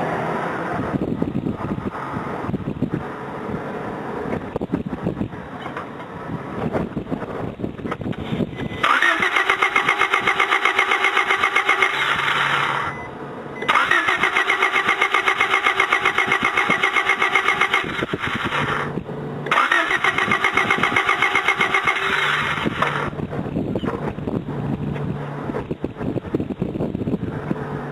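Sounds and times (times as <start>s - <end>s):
car engine cranking: 7.8s - 24.4s.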